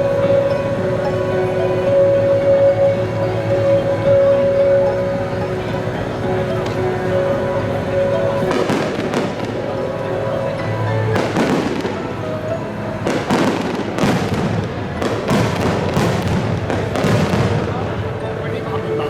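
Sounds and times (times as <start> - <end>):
fireworks booming and crackling: 8.4 - 9.9, 10.6 - 18.6.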